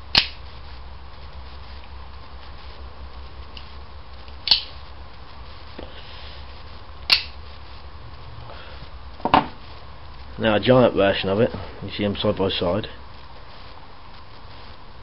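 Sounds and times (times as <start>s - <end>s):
steady low hum: 0.0s - 15.0s
flick knife clicking: 4.4s - 4.7s
faint knock: 9.2s - 9.6s.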